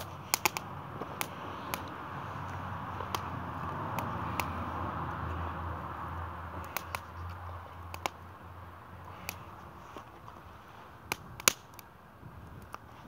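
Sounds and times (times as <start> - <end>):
sharp fire pops: 0.0 - 3.3, 3.9 - 4.6, 6.6 - 7.1, 7.9 - 8.2, 9.1 - 10.3, 11.0 - 12.9
wood fire crackling: 0.0 - 13.0.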